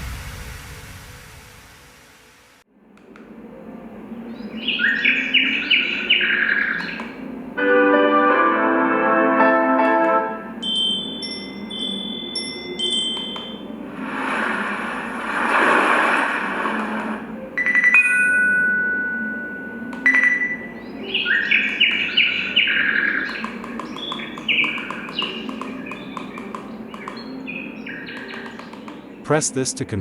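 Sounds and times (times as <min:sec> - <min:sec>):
electronic beeping tones: 0:10.6 - 0:13.8, 0:17.6 - 0:20.7
short high chirping notes: 0:10.6 - 0:13.8
single held electronic tones: 0:10.6 - 0:13.9, 0:17.6 - 0:22.4
rushing swell of noise: 0:13.7 - 0:17.7.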